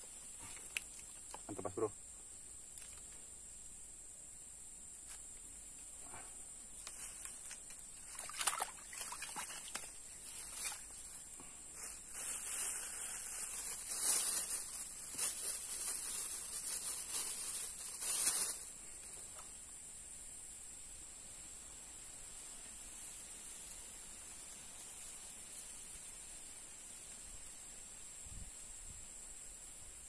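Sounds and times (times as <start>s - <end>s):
rustling and scraping: 5.0s - 8.2s, 9.4s - 19.5s.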